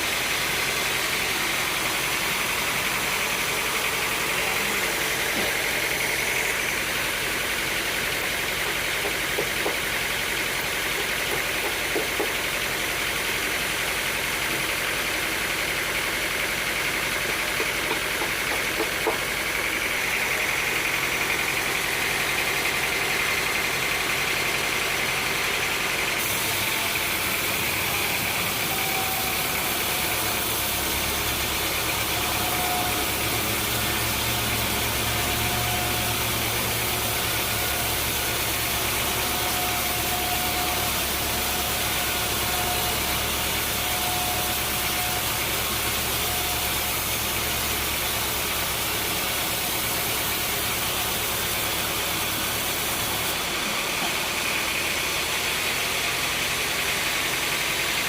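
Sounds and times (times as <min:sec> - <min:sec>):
sawmill machinery noise: 0:00.0 - 0:58.0
motor hum: 0:20.1 - 0:53.9.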